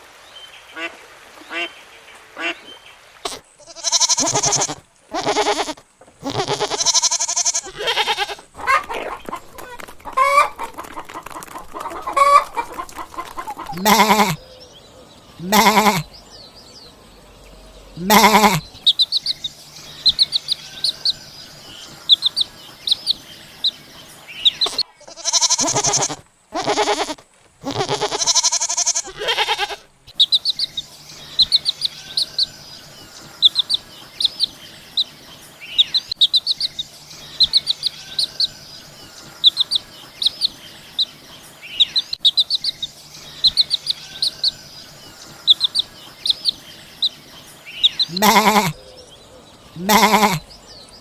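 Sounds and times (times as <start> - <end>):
small birds chirping: 1.4 - 51.0
farm animal calling: 3.2 - 23.8, 24.4 - 35.1, 41.8 - 50.6.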